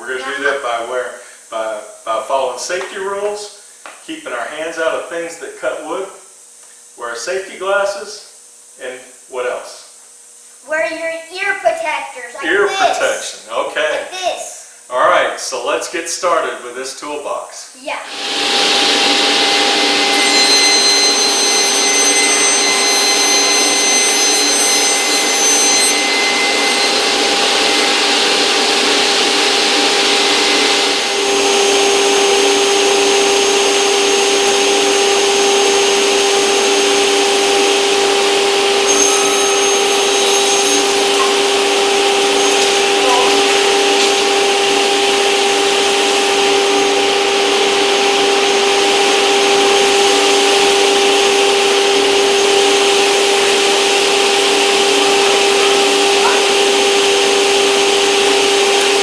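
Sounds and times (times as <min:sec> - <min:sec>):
power tool motor hum: 0:18.0 - 0:59.0.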